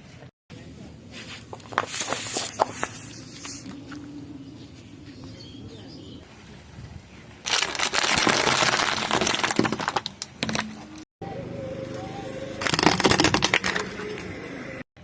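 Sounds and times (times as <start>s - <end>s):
car tyre crushing crunchy objects: 1.1s - 5.3s, 7.5s - 10.8s.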